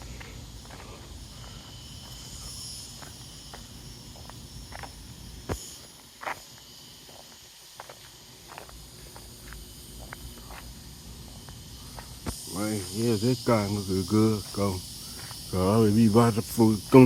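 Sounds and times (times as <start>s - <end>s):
night insects chorus: 0.0s - 17.0s
sharp pops: 12.1s - 12.5s.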